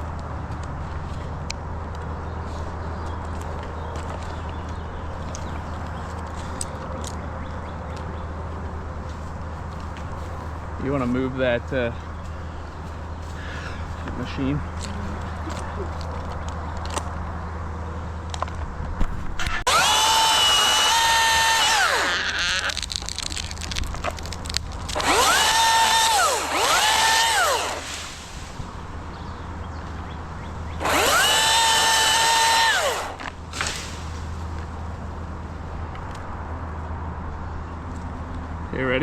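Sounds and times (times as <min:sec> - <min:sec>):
chainsaw revving: 0:19.4 - 0:22.9, 0:24.9 - 0:28.0, 0:30.8 - 0:33.3.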